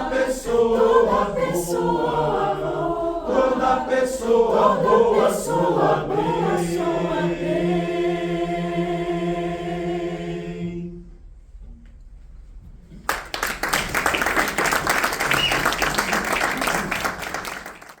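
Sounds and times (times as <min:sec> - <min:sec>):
choir singing a sustained chord: 0:00.0 - 0:11.2
audience applause: 0:13.1 - 0:18.0.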